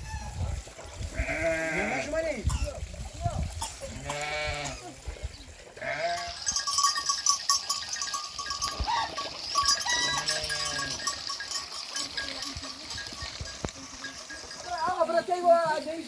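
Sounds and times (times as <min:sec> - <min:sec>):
sheep and goats bleating: 0:01.1 - 0:02.8, 0:03.6 - 0:05.0, 0:05.7 - 0:15.8
small bells jingling: 0:05.8 - 0:16.0.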